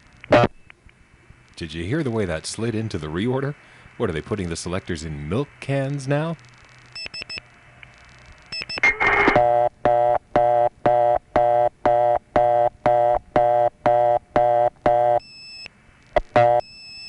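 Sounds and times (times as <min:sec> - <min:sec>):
fast busy tone: 0:06.5 - 0:17.0.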